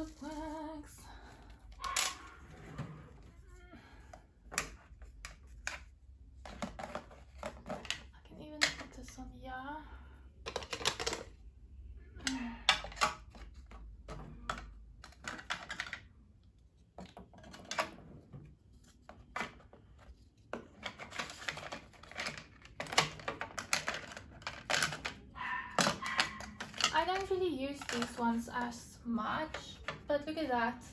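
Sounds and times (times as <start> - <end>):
small plastic tools clicking: 20.8 - 25.2.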